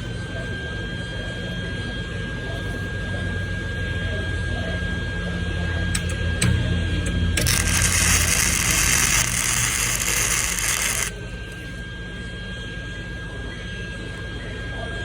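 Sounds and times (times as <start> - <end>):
low machine hum: 3.5 - 12.2
welding arc burning: 6.0 - 11.2
thin high whine: 6.0 - 11.6.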